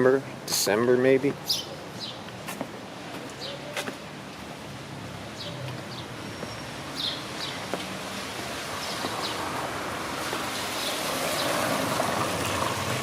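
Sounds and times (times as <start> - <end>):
bird chirping: 1.4 - 2.2, 5.4 - 7.7
rain falling: 4.1 - 13.0.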